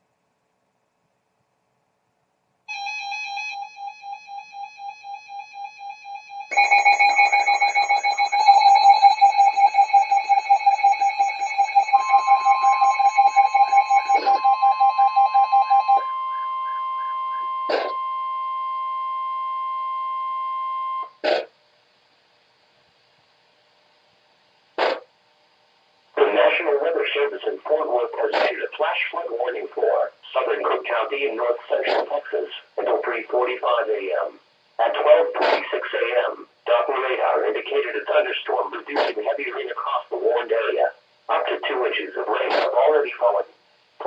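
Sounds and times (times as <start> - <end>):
rapid beeping alarm: 2.7 - 21.2.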